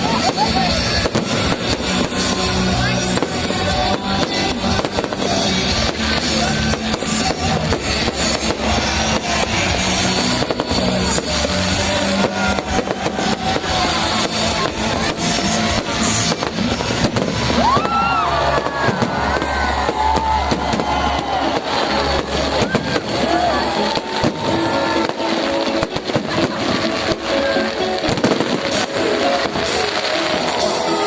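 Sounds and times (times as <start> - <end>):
fireworks bangs and crackling: 0.0 - 31.0
loud music: 0.0 - 31.0.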